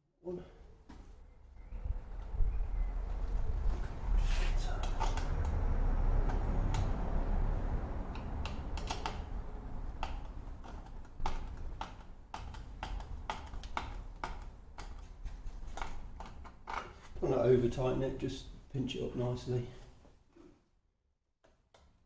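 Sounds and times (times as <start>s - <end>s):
low handling rumble: 1.5s - 8.4s.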